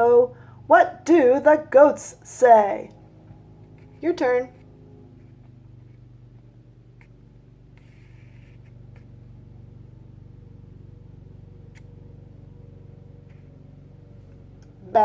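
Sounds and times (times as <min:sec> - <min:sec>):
steady low hum: 0:00.0 - 0:15.0
soft rustle: 0:03.6 - 0:09.5.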